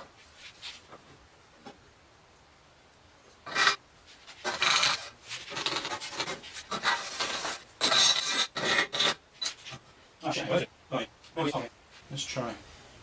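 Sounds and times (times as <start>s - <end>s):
rasping scrapes on sheet metal: 3.5s - 9.2s.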